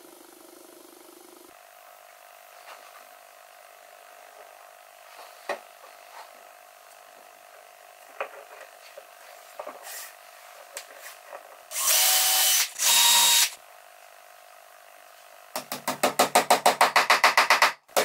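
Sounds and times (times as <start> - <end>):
electric drill whine: 11.7 - 13.6.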